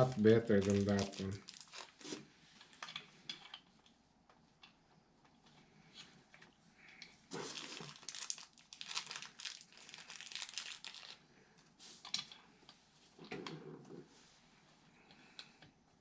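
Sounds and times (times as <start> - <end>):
packaging crinkling: 0.0 - 2.9, 7.3 - 11.2.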